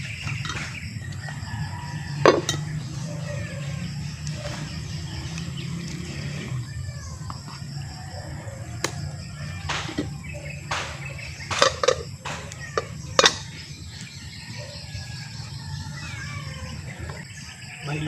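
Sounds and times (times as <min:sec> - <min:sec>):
sharp knocks and clatters: 0:00.0 - 0:01.4, 0:02.2 - 0:02.9, 0:09.6 - 0:13.6.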